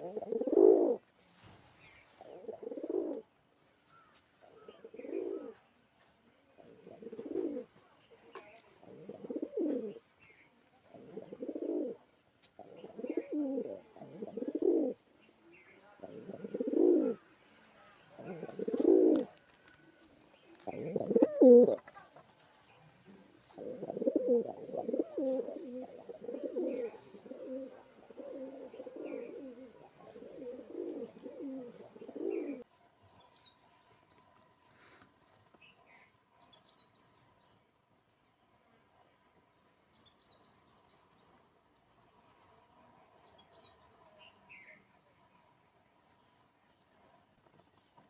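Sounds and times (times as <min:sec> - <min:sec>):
pigeons cooing: 0:00.0 - 0:01.0, 0:02.2 - 0:03.3, 0:04.4 - 0:05.6, 0:06.6 - 0:07.7, 0:08.8 - 0:10.0, 0:10.9 - 0:12.0, 0:12.6 - 0:15.1, 0:16.0 - 0:17.3, 0:18.1 - 0:19.4, 0:20.5 - 0:22.3, 0:23.3 - 0:32.7.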